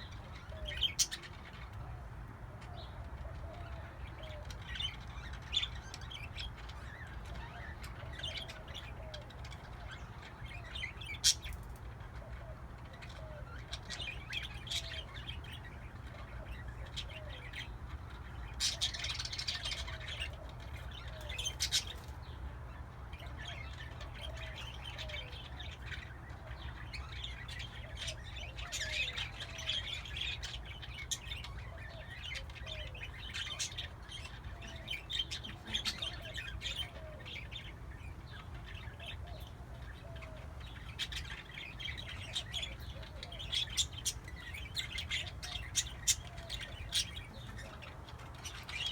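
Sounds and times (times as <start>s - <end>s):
parakeets squawking: 0.0s - 1.8s, 13.0s - 22.2s, 23.1s - 48.9s
parakeets chirping and chattering: 0.0s - 48.9s.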